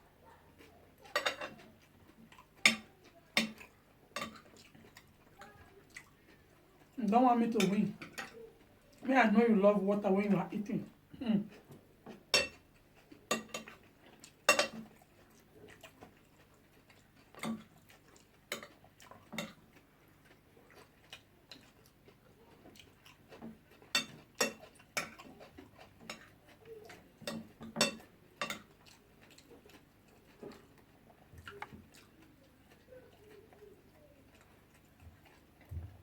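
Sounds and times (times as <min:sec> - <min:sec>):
cutlery clinking against plates: 0:01.1 - 0:05.4, 0:07.5 - 0:08.4, 0:12.0 - 0:15.0, 0:17.3 - 0:19.8, 0:23.4 - 0:30.7.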